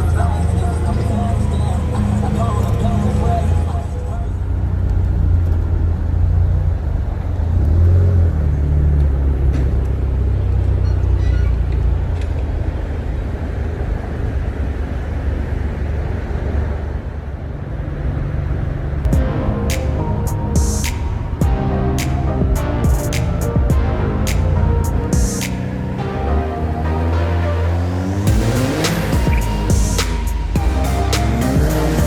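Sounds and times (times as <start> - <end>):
car engine and road noise: 0.0 - 32.0
sharp clicks: 25.2 - 25.8.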